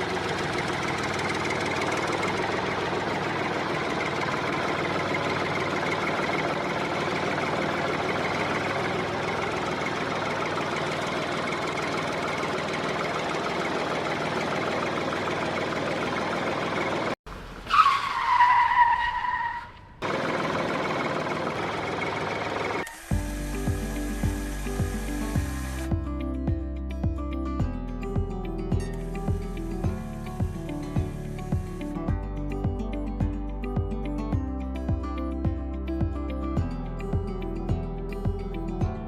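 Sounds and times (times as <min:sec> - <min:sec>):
small engine running: 0:00.0 - 0:17.6, 0:20.0 - 0:26.0, 0:28.8 - 0:32.1.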